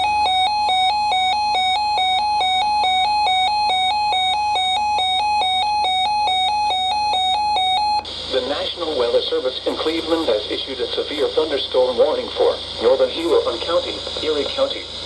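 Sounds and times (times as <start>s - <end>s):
warbling electronic alarm tone: 0.0s - 8.5s.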